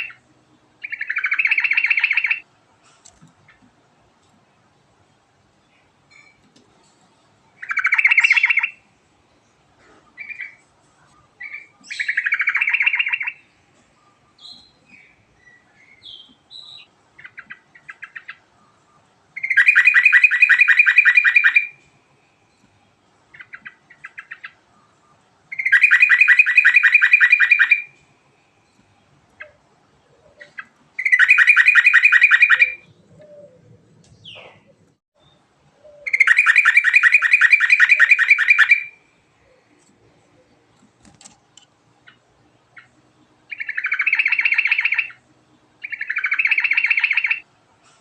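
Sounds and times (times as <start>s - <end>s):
bird singing rolling trills: 0.0s - 2.5s, 7.4s - 40.8s, 42.0s - 47.5s
bird chirps: 0.8s - 2.4s, 5.6s - 6.4s, 7.6s - 8.9s, 9.8s - 40.6s, 42.0s - 48.0s.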